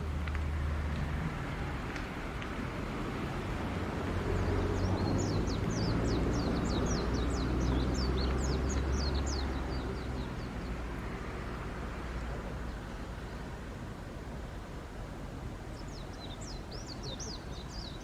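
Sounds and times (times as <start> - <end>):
bird chirping: 4.2 - 10.8, 15.7 - 18.0.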